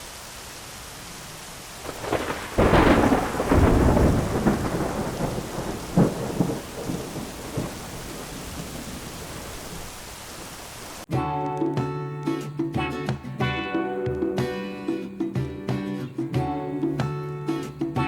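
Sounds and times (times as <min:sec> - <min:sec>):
steady rain: 0:00.0 - 0:11.1
sharp thunder crack: 0:01.8 - 0:10.0
thunder rumbling: 0:01.8 - 0:11.0.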